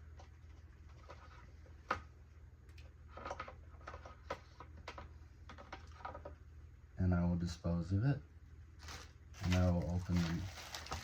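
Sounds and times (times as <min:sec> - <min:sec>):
plastic tubing clicks and rustles: 0:00.0 - 0:06.4, 0:08.8 - 0:11.0
steady low hum: 0:00.0 - 0:10.8.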